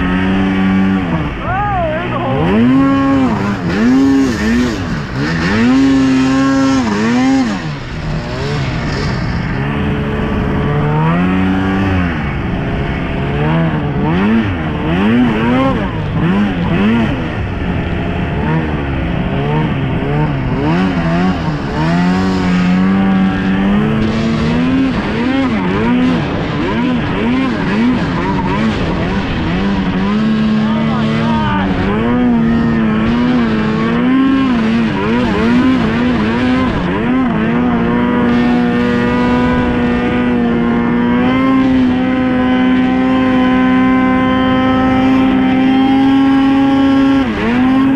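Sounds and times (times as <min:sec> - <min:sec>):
snowmobile engine revving: 0:00.0 - 0:47.9.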